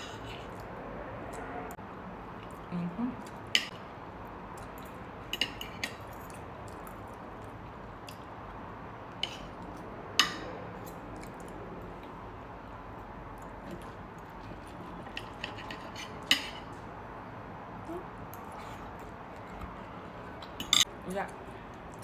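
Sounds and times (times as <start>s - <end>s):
cutlery clinking on a plate: 4.8s - 6.4s, 14.9s - 16.7s, 20.5s - 20.9s.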